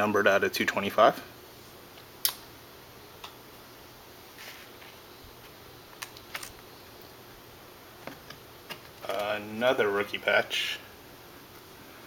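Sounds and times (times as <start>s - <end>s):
faint steady hiss: 0.0s - 12.0s
small sharp clicks: 2.0s - 2.5s.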